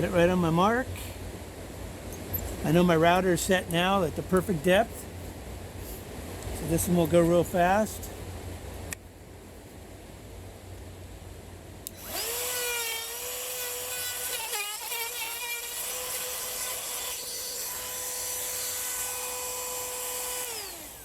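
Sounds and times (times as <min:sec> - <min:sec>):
wood router whining: 0:11.9 - 0:21.0.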